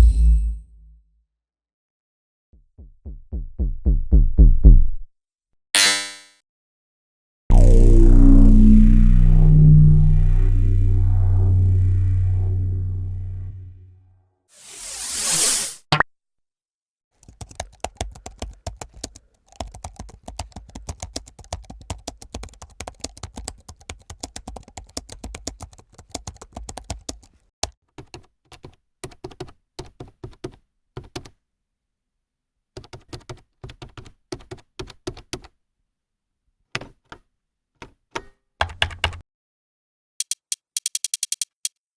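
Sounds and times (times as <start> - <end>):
computer keyboard typing: 17.2 - 27.4, 38.6 - 39.2, 40.2 - 41.8.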